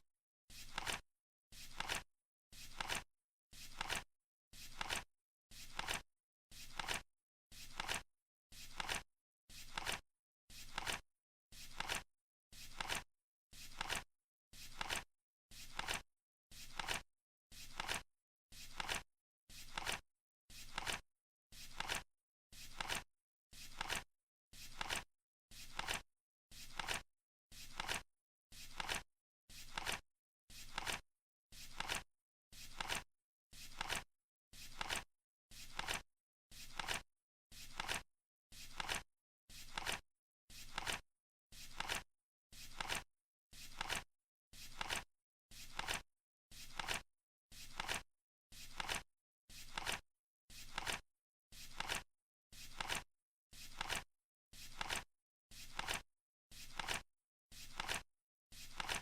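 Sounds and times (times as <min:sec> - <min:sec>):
flip clock cards flipping: 0:00.6 - 0:01.0, 0:01.6 - 0:02.0, 0:02.6 - 0:03.0, 0:03.6 - 0:04.0, 0:04.7 - 0:05.0, 0:05.7 - 0:06.0, 0:06.7 - 0:07.0, 0:07.7 - 0:08.0, 0:08.7 - 0:09.0, 0:09.7 - 0:10.0, 0:10.7 - 0:11.0, 0:11.7 - 0:12.0, 0:12.7 - 0:13.0, 0:13.7 - 0:14.0, 0:14.7 - 0:15.0, 0:15.7 - 0:16.0, 0:16.7 - 0:17.0, 0:17.7 - 0:18.0, 0:18.7 - 0:19.0, 0:19.7 - 0:20.0, 0:20.7 - 0:21.0, 0:21.7 - 0:22.0, 0:22.7 - 0:23.0, 0:23.7 - 0:24.0, 0:24.7 - 0:25.0, 0:25.7 - 0:26.0, 0:26.7 - 0:27.0, 0:27.7 - 0:28.0, 0:28.7 - 0:29.0, 0:29.7 - 0:30.0, 0:30.7 - 0:31.0, 0:31.7 - 0:32.0, 0:32.7 - 0:33.0, 0:33.7 - 0:34.0, 0:34.7 - 0:35.0, 0:35.7 - 0:36.0, 0:36.7 - 0:37.0, 0:37.7 - 0:38.0, 0:38.7 - 0:39.0, 0:39.7 - 0:40.0, 0:40.7 - 0:41.0, 0:41.7 - 0:42.0, 0:42.7 - 0:43.0, 0:43.7 - 0:44.0, 0:44.7 - 0:45.0, 0:45.7 - 0:46.0, 0:46.7 - 0:47.0, 0:47.7 - 0:48.0, 0:48.7 - 0:49.0, 0:49.7 - 0:50.0, 0:50.7 - 0:51.0, 0:51.7 - 0:52.0, 0:52.7 - 0:53.0, 0:53.7 - 0:54.0, 0:54.7 - 0:55.0, 0:55.7 - 0:56.0, 0:56.7 - 0:57.0, 0:57.7 - 0:58.0, 0:58.7 - 0:59.0.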